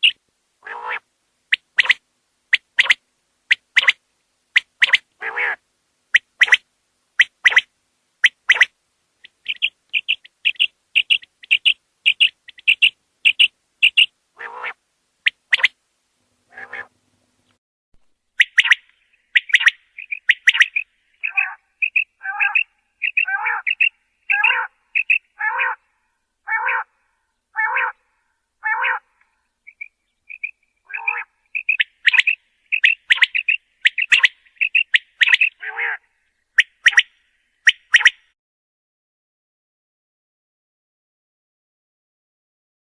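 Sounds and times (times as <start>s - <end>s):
quail calling sharp high notes: 0.0s - 4.0s, 4.6s - 5.6s, 6.2s - 6.6s, 7.2s - 15.8s, 16.5s - 16.9s, 18.4s - 25.9s, 26.5s - 26.9s, 27.6s - 28.0s, 28.6s - 29.1s, 29.7s - 38.3s
harsh lower bird call: 7.2s - 15.8s, 16.5s - 16.9s, 18.4s - 38.4s.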